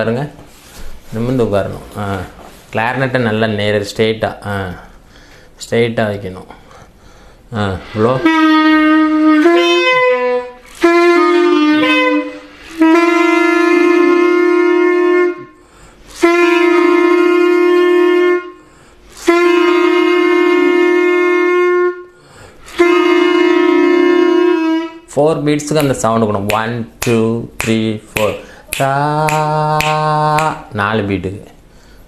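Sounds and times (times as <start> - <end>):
player breathing: 4.9 - 5.6, 6.6 - 7.5, 28.4 - 28.7
clarinet long held tones: 7.6 - 26.2.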